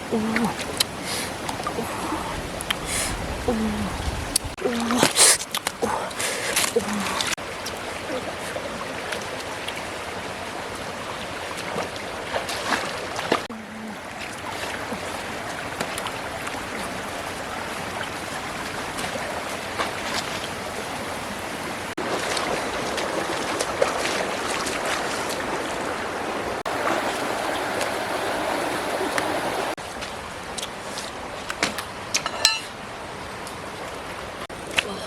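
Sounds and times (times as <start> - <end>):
running water rushing: 0.0 - 35.0
small splashes and clicks: 4.3 - 13.5, 14.1 - 20.8.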